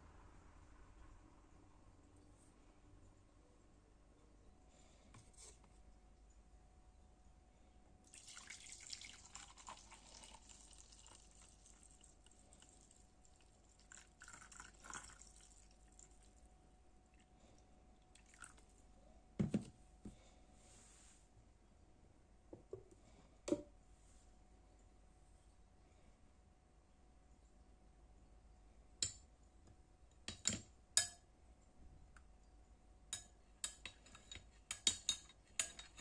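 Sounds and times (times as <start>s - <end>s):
liquid dripping and trickling: 8.1s - 16.4s, 18.0s - 18.7s.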